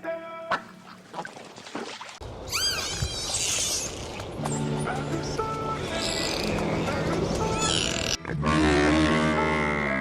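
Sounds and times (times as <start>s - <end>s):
animal squeaky calls: 2.5s - 4.2s, 5.8s - 8.2s.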